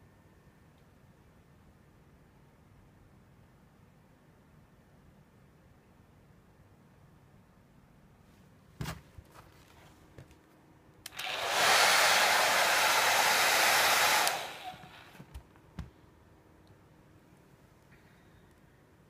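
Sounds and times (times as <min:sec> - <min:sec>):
hair dryer switch click: 0:11.0 - 0:14.8
hair dryer blowing: 0:11.1 - 0:15.3.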